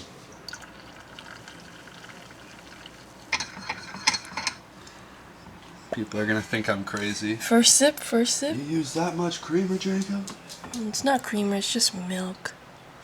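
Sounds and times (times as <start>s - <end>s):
faint steady hiss: 0.0s - 13.0s
milk pouring into coffee: 0.4s - 4.3s
clinks: 3.3s - 4.6s.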